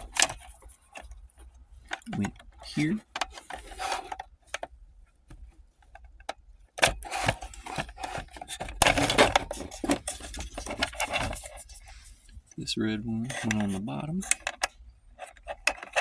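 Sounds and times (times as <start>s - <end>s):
scraping of plastic: 0.0s - 4.7s, 6.8s - 12.2s, 13.2s - 16.0s
hands rubbing plastic trim: 6.9s - 12.2s.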